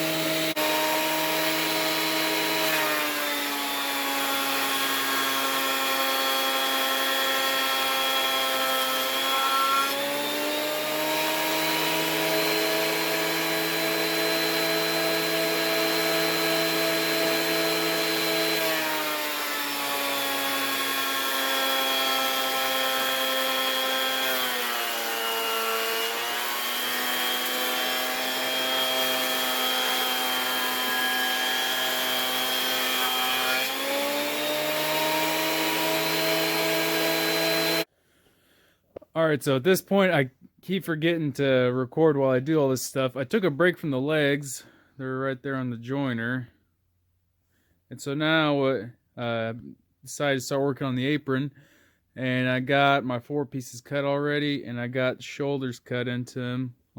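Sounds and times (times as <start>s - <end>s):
electric sander motor hum: 0.0s - 2.8s, 25.0s - 37.9s.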